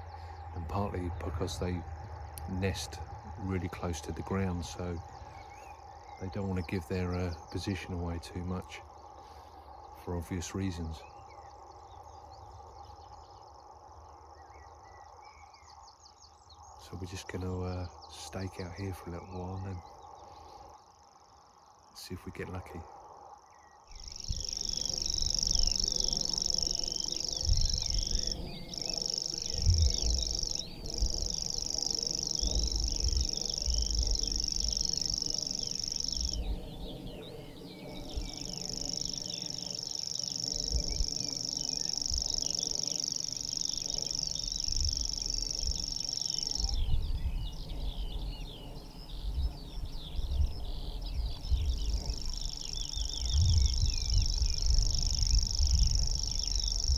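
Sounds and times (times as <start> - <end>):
small birds chirping: 0.0 - 56.9
high-pitched bird reeling trill: 24.0 - 47.3, 52.1 - 56.9.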